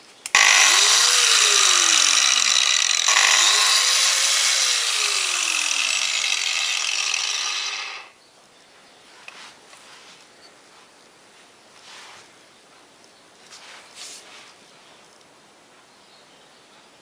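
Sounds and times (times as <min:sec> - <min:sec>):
angle grinder whine: 0:00.3 - 0:08.1.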